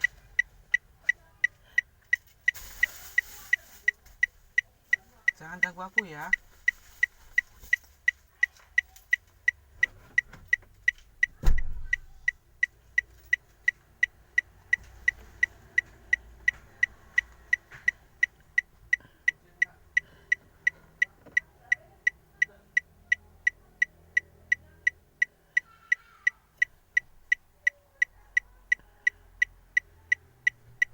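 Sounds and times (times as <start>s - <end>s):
turn signal ticking: 0.0s - 30.9s
loud low thump: 11.4s - 12.0s.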